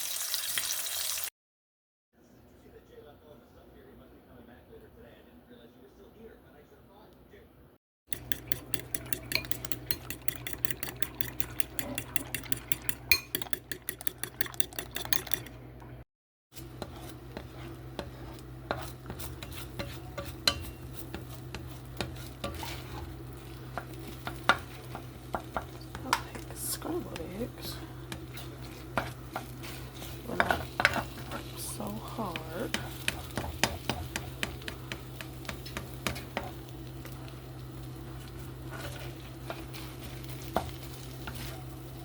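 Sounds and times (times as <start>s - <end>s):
eggs beaten in a bowl: 8.1s - 15.6s, 16.6s - 42.0s
utensil clinking against bowl: 8.1s - 15.6s, 18.7s - 22.8s
steady low hum: 16.6s - 42.0s.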